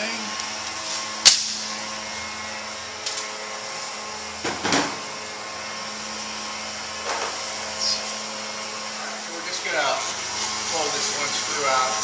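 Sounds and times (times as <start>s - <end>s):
steady machine hum: 0.0s - 12.0s.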